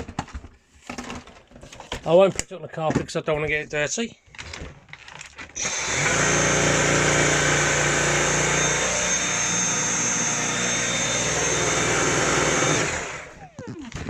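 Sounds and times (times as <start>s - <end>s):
vacuum cleaner running: 5.6s - 13.5s
vacuum motor winding down: 5.6s - 14.0s.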